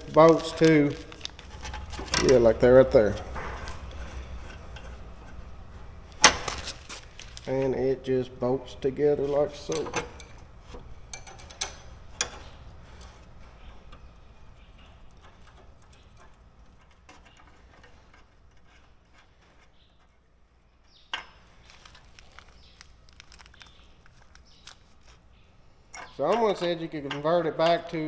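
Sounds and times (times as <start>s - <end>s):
low steady hum: 0.0s - 28.0s
metal clicks and taps: 9.6s - 18.8s, 25.9s - 28.0s.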